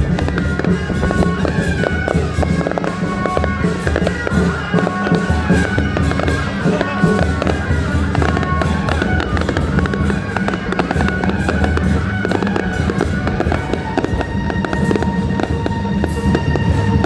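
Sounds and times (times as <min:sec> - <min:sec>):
fireworks crackling: 0:00.0 - 0:17.0
music playing: 0:00.0 - 0:17.0.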